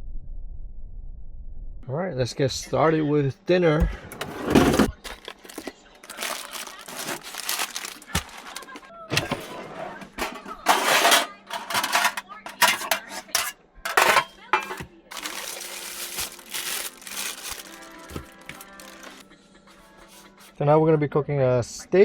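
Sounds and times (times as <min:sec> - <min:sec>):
cookware clattering: 0:04.0 - 0:19.2
food packaging rustling: 0:04.1 - 0:19.2.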